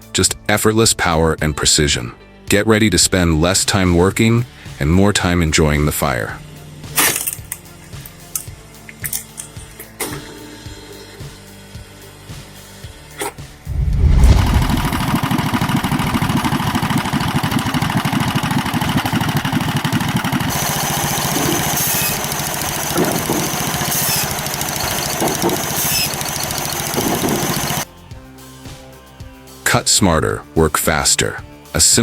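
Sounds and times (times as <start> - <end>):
small engine running: 5.9 - 12.3, 14.0 - 27.9.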